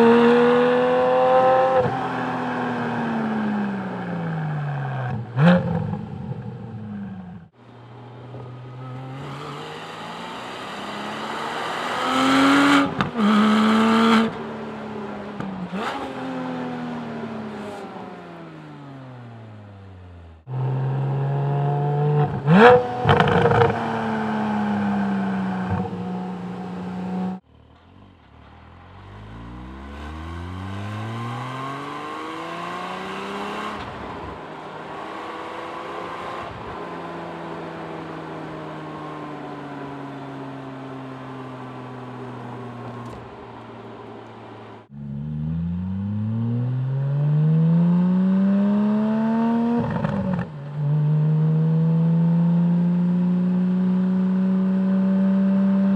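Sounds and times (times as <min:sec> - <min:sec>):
car exhaust engine note: 0:44.9 - 0:48.1.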